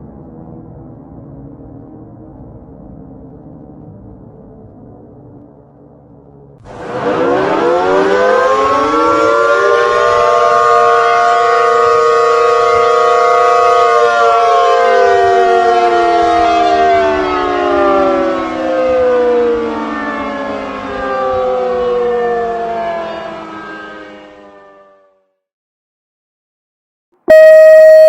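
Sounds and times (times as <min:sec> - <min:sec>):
warning siren winding: 0:27.3 - 0:28.0.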